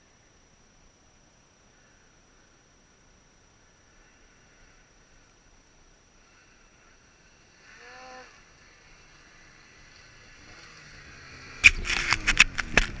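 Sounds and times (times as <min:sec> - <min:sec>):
snowmobile engine: 0:06.2 - 0:13.0.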